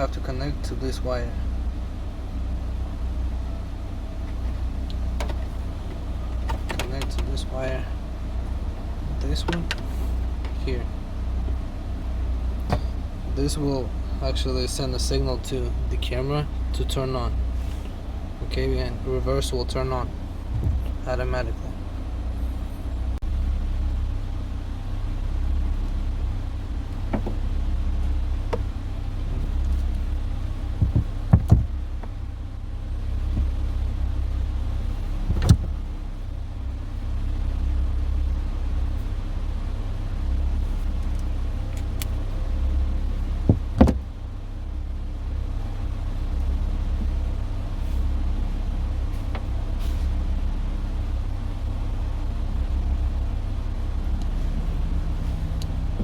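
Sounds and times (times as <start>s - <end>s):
car engine idling: 0.0s - 56.0s
sharp clicks and knocks: 4.2s - 7.4s, 9.2s - 10.6s, 26.9s - 27.5s, 30.7s - 32.2s, 35.2s - 35.9s, 43.4s - 44.1s.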